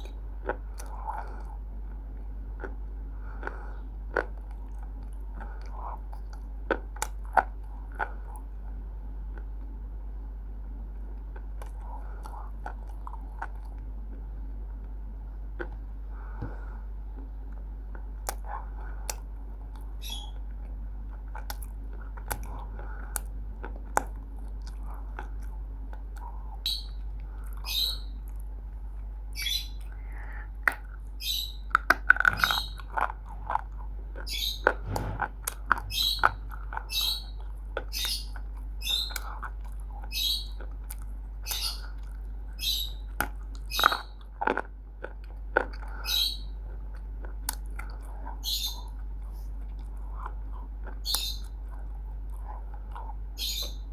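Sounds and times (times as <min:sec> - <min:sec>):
crunching and chewing clay: 0:00.0 - 0:53.9
low steady hum: 0:00.0 - 0:53.9.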